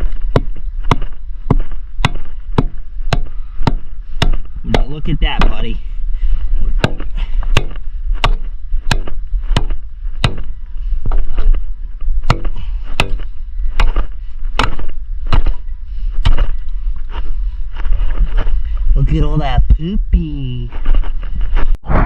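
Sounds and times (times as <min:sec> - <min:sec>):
low steady rumble: 0:00.0 - 0:22.0
hand tool striking: 0:00.3 - 0:05.7, 0:06.8 - 0:10.5, 0:12.2 - 0:14.0.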